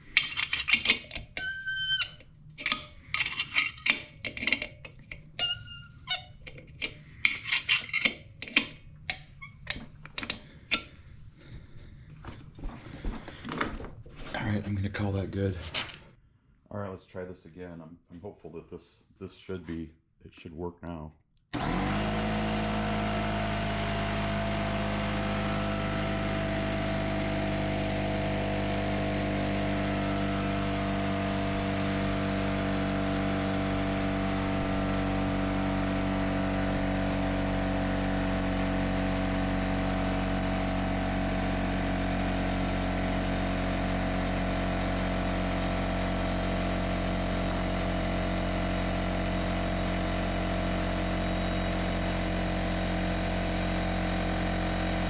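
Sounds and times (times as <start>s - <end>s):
air compressor running: 21.6s - 55.0s.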